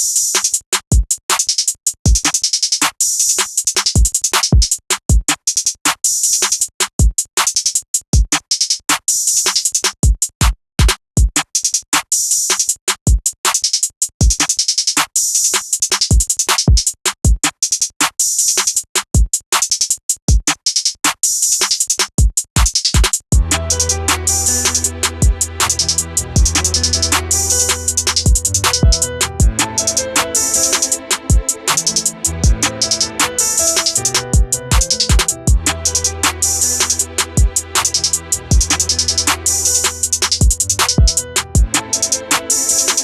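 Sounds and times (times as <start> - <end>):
rapid hi-hats: 0.0 - 43.0
snare hits: 33.0 - 35.4.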